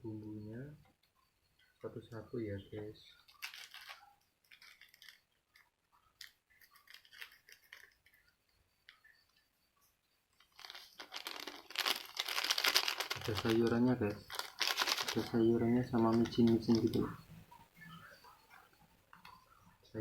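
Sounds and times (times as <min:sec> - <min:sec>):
plastic sachet crinkling and tearing: 0:03.3 - 0:05.2, 0:10.5 - 0:17.1.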